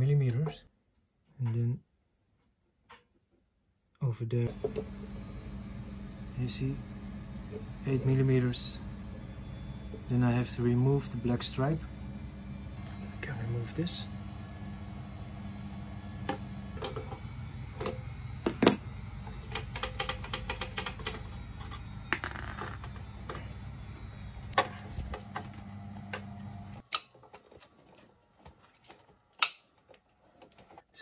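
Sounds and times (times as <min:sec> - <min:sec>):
steady low hum: 0:04.3 - 0:26.8.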